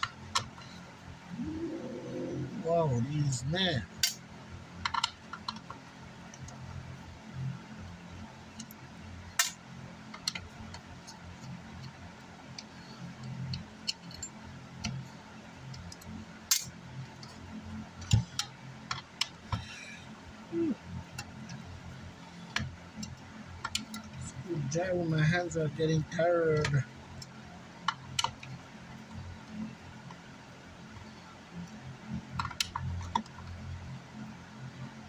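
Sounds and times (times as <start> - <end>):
low hum: 1.3 - 3.7.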